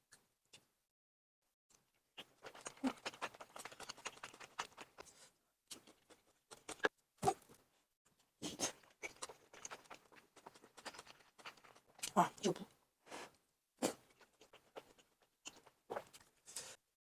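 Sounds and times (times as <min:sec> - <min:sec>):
person chewing food: 0:01.7 - 0:07.6, 0:08.4 - 0:12.3, 0:13.8 - 0:16.8.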